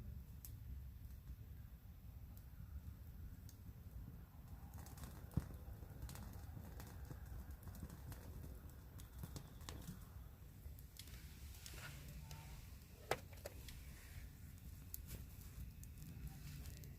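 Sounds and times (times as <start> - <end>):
wood bonfire crackling: 0.0 - 16.9
sharp pops of fire: 4.4 - 12.1.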